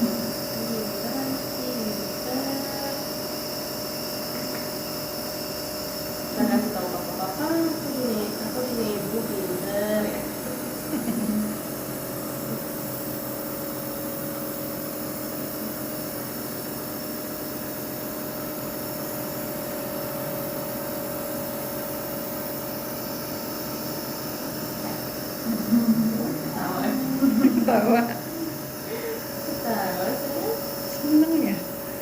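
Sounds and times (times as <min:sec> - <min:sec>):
steady machine hum and hiss: 0:00.0 - 0:32.0
person speaking: 0:25.5 - 0:31.6.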